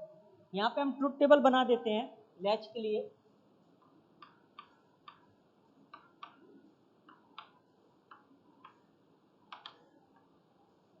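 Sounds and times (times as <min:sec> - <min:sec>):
faint irregular clicks: 0:03.8 - 0:10.4.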